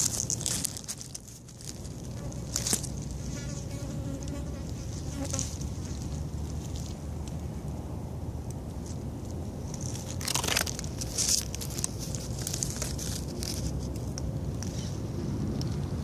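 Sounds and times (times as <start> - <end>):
dry leaves crunching: 0.0 - 7.5, 9.6 - 14.8
steady low rumble: 4.6 - 16.0.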